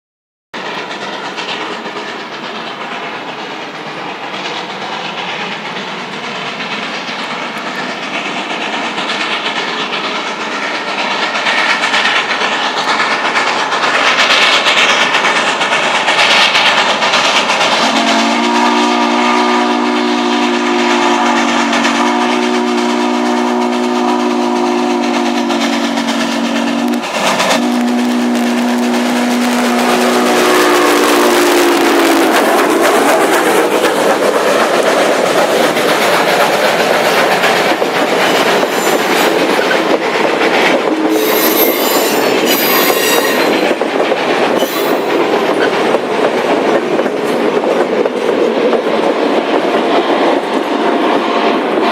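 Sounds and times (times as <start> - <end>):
steam locomotive running: 0.6 - 51.9
chime steam whistle: 38.1 - 39.7, 40.9 - 43.8, 44.6 - 45.3.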